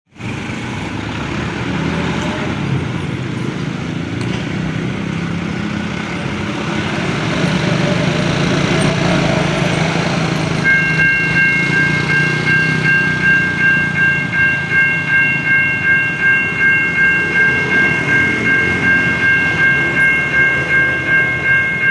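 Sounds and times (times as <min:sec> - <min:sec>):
road traffic rumble: 0:00.1 - 0:21.9
crossing alarm warning tone: 0:01.1 - 0:21.9.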